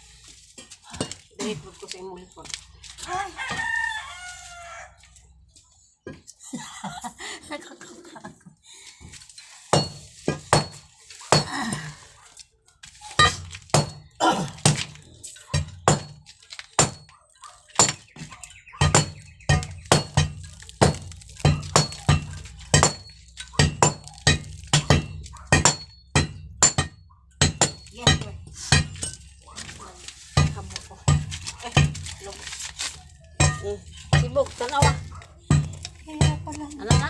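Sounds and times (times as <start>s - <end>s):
hand tool striking masonry: 0.6s - 1.8s, 9.7s - 12.0s, 12.9s - 17.2s, 17.8s - 37.0s.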